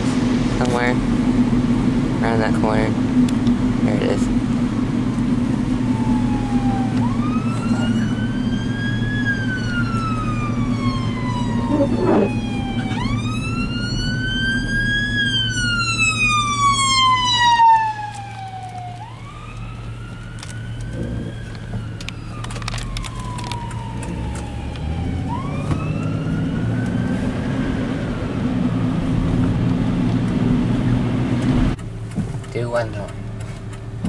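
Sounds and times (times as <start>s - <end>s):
road and engine hum: 0.0s - 34.0s
emergency siren wailing: 5.0s - 31.8s.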